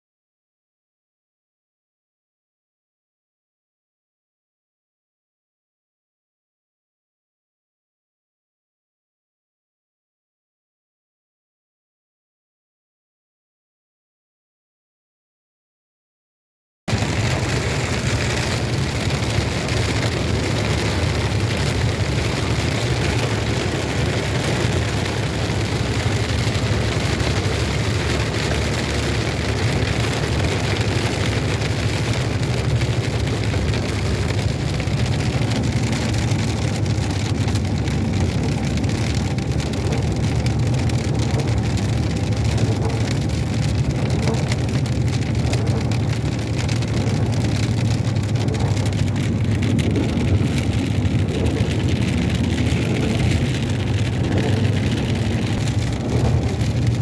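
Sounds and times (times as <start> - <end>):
car engine and tyres rumbling: 16.9 - 57.0
rain on a car: 16.9 - 57.0.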